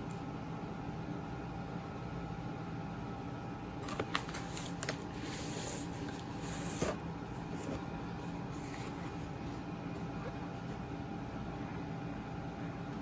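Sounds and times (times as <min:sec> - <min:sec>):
steady background hum: 0:00.0 - 0:13.0
packaging rustling: 0:03.8 - 0:07.8.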